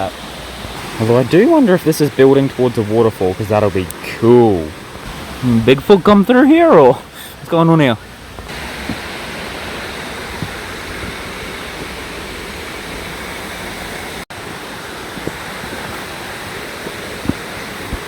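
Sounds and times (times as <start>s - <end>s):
creek water rushing: 0.0s - 18.0s.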